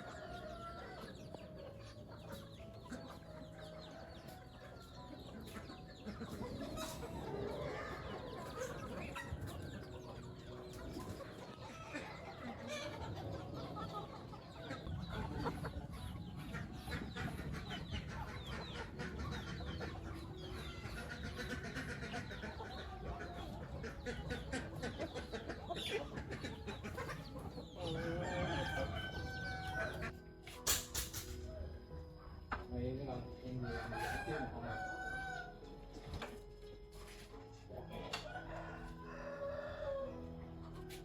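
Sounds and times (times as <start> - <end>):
chickens clucking: 0.0 - 41.0
rooster crowing: 27.9 - 30.1, 33.7 - 35.6, 38.3 - 40.2.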